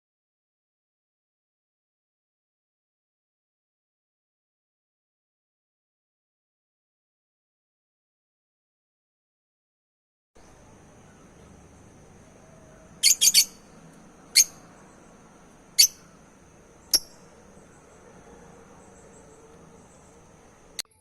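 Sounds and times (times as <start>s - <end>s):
lovebirds chirping: 10.4s - 20.8s.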